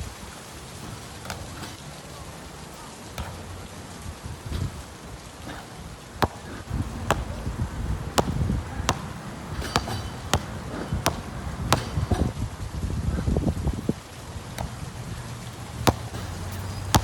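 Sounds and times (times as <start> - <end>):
basketball bouncing on court: 0.9 - 1.7, 3.1 - 3.5, 5.5 - 7.5, 8.1 - 12.4, 14.5 - 14.9, 15.7 - 17.0.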